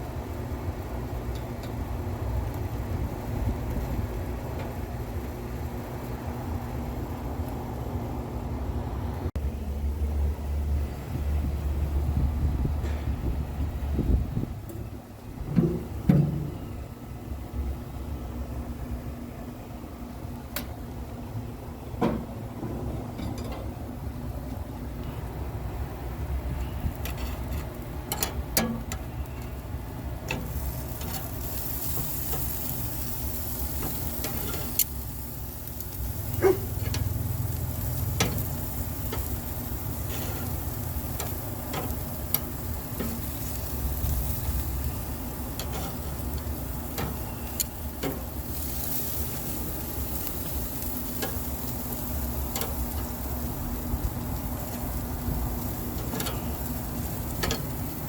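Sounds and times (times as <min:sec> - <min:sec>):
meat sizzling on a grill: 0:00.0 - 0:08.2, 0:23.6 - 0:58.0
steady low rumble: 0:00.0 - 0:58.0
fat popping and crackling: 0:26.6 - 0:58.0.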